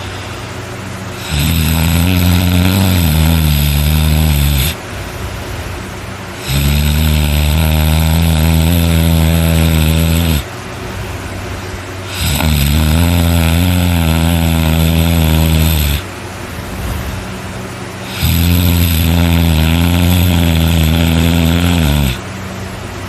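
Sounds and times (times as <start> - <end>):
person breathing: 0.0 - 2.1
person snoring loudly: 1.1 - 4.8, 6.4 - 10.5, 12.1 - 16.1, 18.0 - 22.2.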